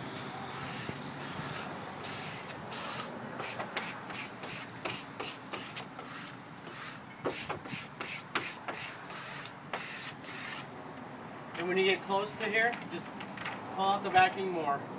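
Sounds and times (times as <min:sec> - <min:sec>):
backing paper peeling: 0:00.6 - 0:10.7.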